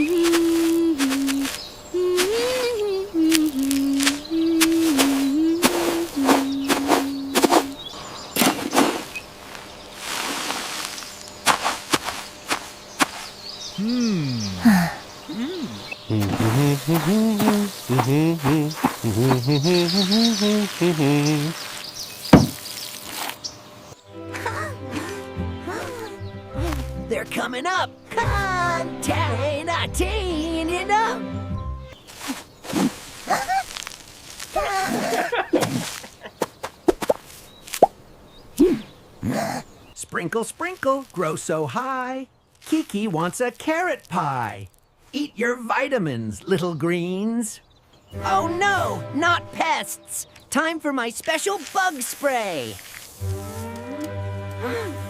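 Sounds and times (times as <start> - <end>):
cartoon voice vocal sounds: 13.8 - 21.5
low thump: 22.3 - 22.6
sharp taps and knocks: 22.3 - 22.6.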